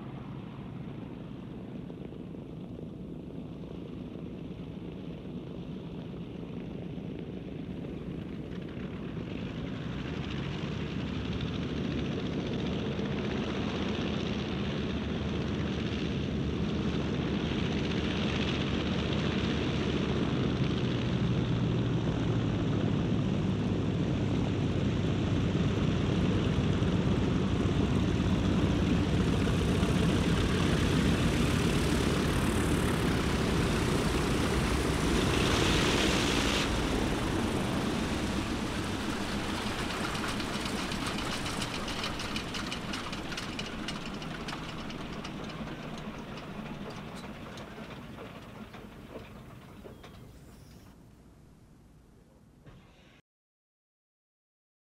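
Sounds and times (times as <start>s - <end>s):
engine drone: 7.7s - 51.1s
steady rushing noise: 28.8s - 49.6s.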